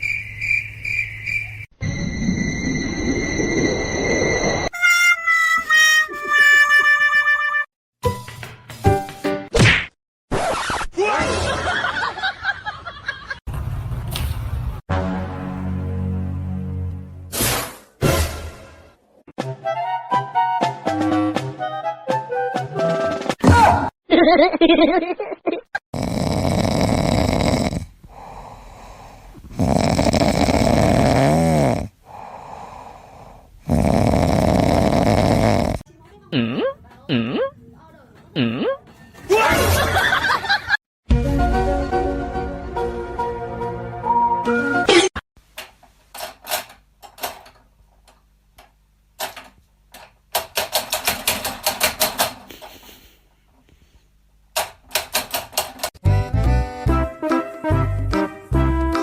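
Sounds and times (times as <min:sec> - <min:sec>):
music: 0:04.7 - 0:09.5, 0:14.9 - 0:17.4, 0:18.0 - 0:23.4, 0:41.1 - 0:44.9, 0:56.0 - 0:59.0
pet snoring: 0:25.9 - 0:35.9
quiet breaths: 0:26.0 - 0:30.8, 0:31.9 - 0:35.8, 0:52.4 - 0:54.2.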